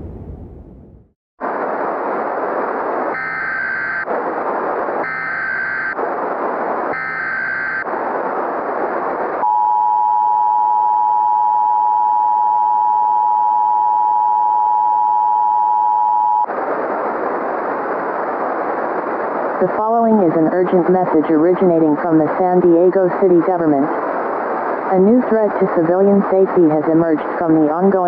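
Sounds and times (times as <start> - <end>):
static hiss: 1.4 - 10.7, 16.4 - 28.0.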